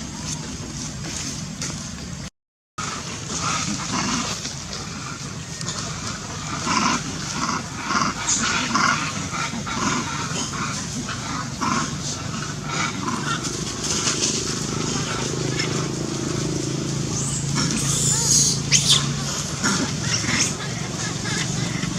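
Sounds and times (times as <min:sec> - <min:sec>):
monkeys calling and squealing: 0:03.2 - 0:21.9.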